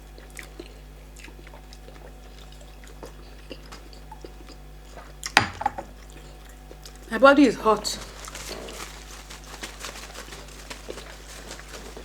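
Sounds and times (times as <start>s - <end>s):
chewing with wet mouth clicks: 0.0s - 7.1s.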